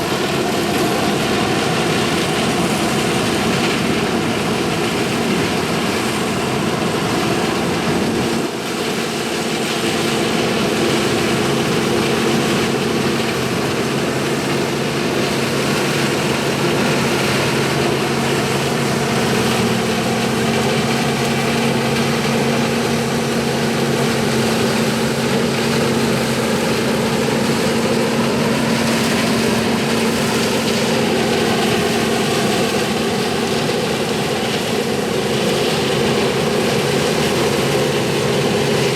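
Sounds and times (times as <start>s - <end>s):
diesel combine engine running: 0.0s - 38.9s
machinery noise: 9.6s - 38.9s.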